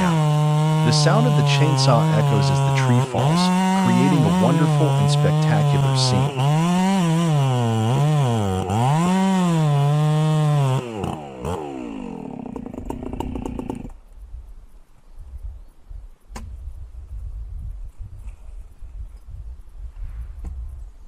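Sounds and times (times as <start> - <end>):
chainsaw engine revving: 0.0 - 14.0.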